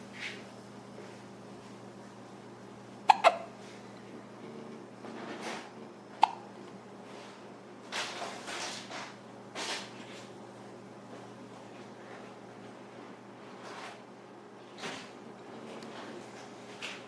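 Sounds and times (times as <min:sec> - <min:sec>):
person hiccupping: 0:03.1 - 0:03.6, 0:06.1 - 0:06.5.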